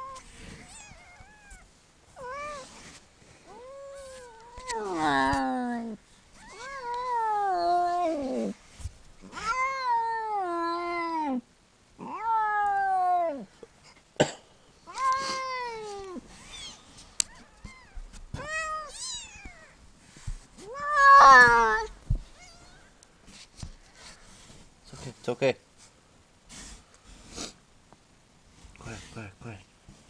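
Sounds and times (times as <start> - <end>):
cat meowing: 6.4 - 8.5, 14.9 - 19.8, 20.6 - 22.9.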